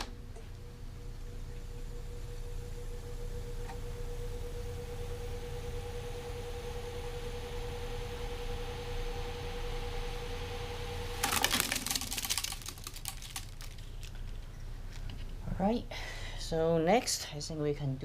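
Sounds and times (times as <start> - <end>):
hiss and hum: 0.0 - 11.2
tape deck whine: 0.0 - 15.0
rapid clatter of clicks: 11.2 - 14.4.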